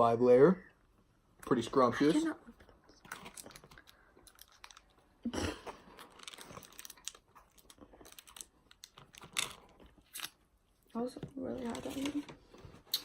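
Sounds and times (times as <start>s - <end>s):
mouth clicks and crunches: 2.6s - 10.4s
chewing and biting food: 2.9s - 5.1s.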